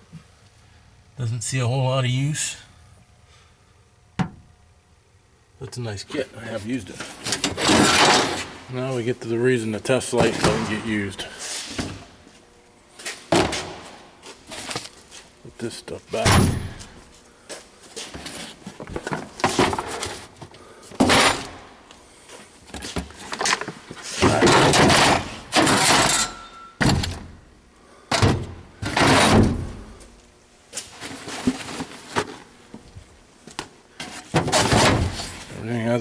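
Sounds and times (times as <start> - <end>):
sliding scraping rattles: 7.0 - 8.7.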